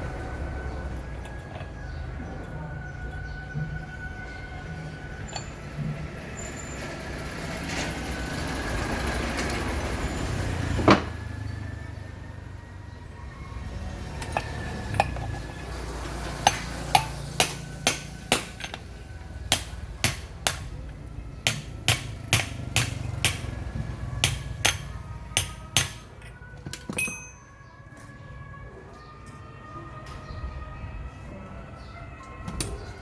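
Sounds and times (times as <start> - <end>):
hammer striking metal: 16.4 - 27.5.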